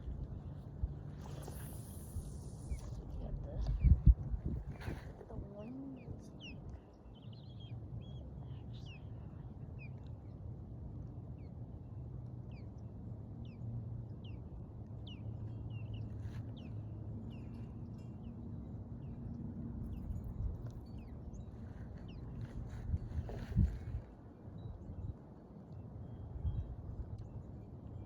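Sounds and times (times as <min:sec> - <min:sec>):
wind buffeting microphone: 0:01.5 - 0:06.7, 0:19.9 - 0:25.2.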